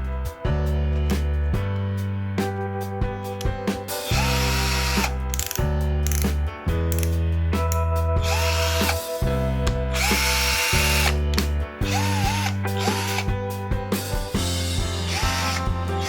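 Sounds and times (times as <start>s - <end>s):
background music: 0.0s - 16.0s
hammer drill running: 4.1s - 5.1s, 8.2s - 9.0s, 9.9s - 11.2s, 11.9s - 13.2s, 15.1s - 15.6s.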